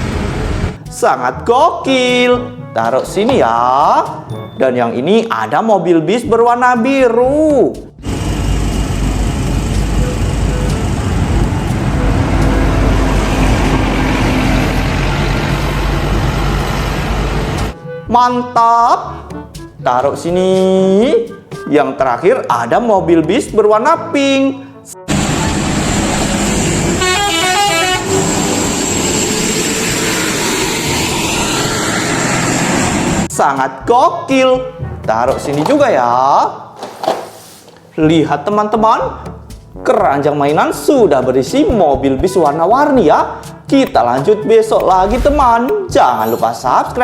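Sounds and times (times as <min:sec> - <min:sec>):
bus engine running: 0:00.0 - 0:00.8, 0:08.0 - 0:17.8, 0:25.1 - 0:33.3
traffic: 0:08.8 - 0:17.8, 0:25.1 - 0:33.3
musical bus horn toots: 0:10.0 - 0:18.3, 0:24.7 - 0:28.7.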